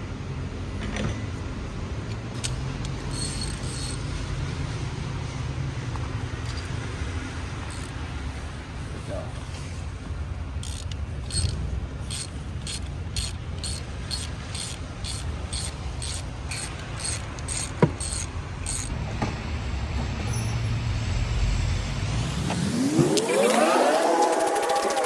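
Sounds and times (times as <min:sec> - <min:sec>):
hand ratchet clicking: 0:02.1 - 0:04.1, 0:06.4 - 0:06.8, 0:07.6 - 0:08.0, 0:10.6 - 0:18.9
steady low rumble: 0:03.9 - 0:23.1.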